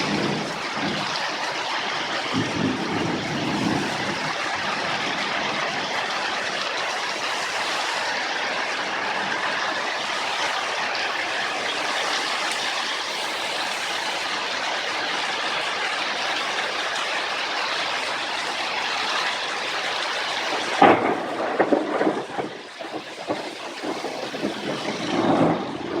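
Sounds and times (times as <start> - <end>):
heavy rain hissing: 0.0 - 26.0.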